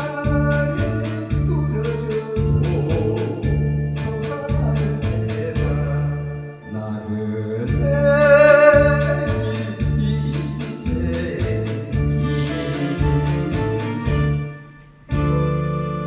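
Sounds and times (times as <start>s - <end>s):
backing track with beat and bass: 0.0s - 6.6s, 7.7s - 16.0s.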